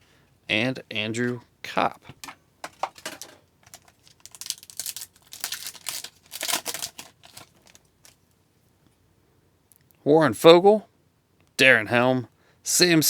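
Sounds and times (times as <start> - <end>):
foil wrapper tearing and crinkling: 2.6 - 8.2.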